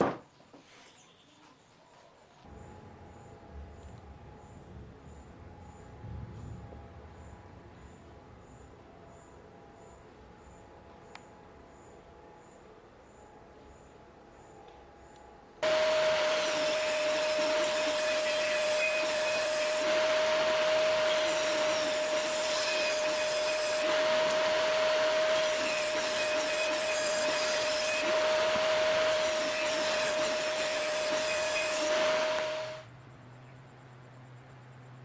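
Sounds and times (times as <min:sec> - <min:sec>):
tool cutting wood: 0:15.6 - 0:32.8
power tool motor whine: 0:15.6 - 0:32.9.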